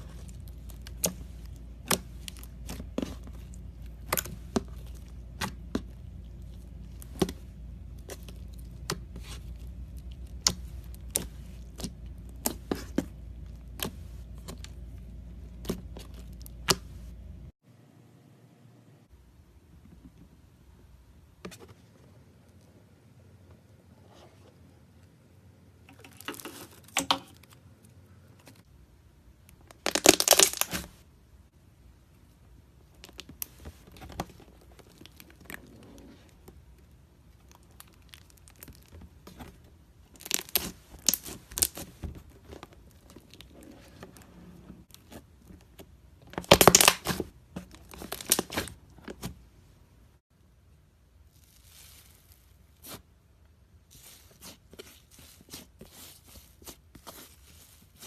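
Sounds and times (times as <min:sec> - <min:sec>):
slime crackling and popping: 0:29.7 - 0:31.0, 0:37.3 - 0:43.6, 0:46.2 - 0:49.0.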